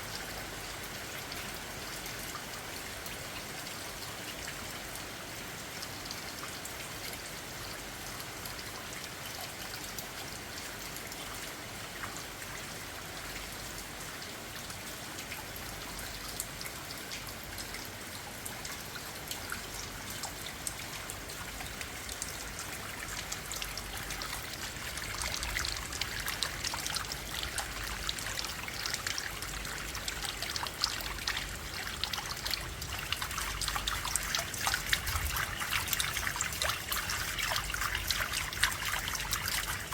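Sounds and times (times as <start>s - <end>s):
patter of raindrops: 0.0s - 39.9s
rain falling: 0.0s - 39.9s
water trickling: 0.0s - 39.9s.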